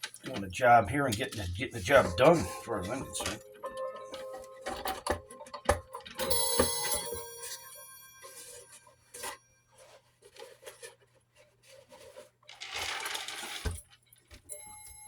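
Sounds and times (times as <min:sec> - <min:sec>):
clock chime rods ringing faintly: 0:00.3 - 0:09.9, 0:14.5 - 0:15.0
metal clock parts clinking: 0:01.0 - 0:09.4
scraping rustle: 0:08.4 - 0:13.8.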